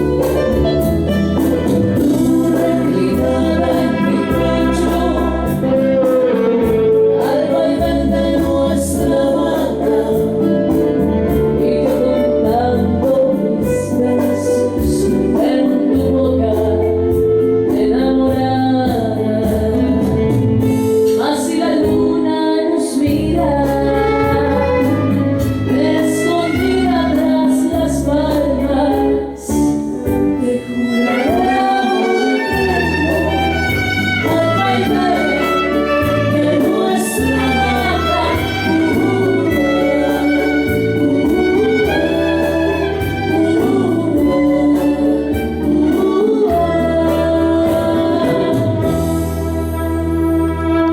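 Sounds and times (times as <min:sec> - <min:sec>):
steady bass line: 0:00.0 - 0:21.1, 0:23.1 - 0:50.9
person singing: 0:00.0 - 0:50.9
bowed strings: 0:30.4 - 0:50.9.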